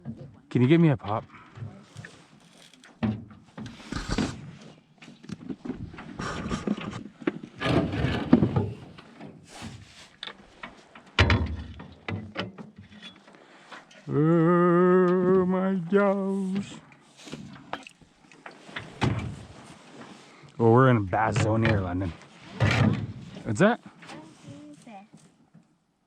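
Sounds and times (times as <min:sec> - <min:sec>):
gear knocking against canoe: 0:21.1 - 0:23.8.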